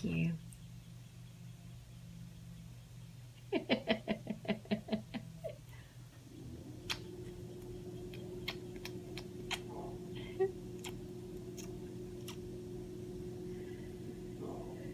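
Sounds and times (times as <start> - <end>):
steady hum with mid-pitched tone: 0.0 - 14.9.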